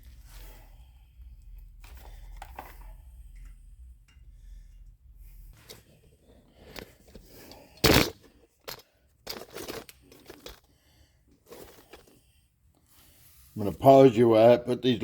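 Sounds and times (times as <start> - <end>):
knocks scrapes and rattles: 5.6 - 10.7, 11.4 - 12.2.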